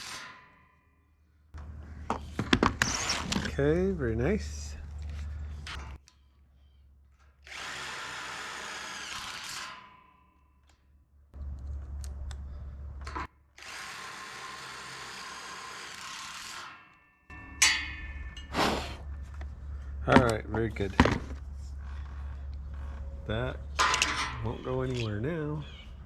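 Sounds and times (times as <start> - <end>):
power drill driving screws: 7.4 - 9.8, 13.6 - 16.9.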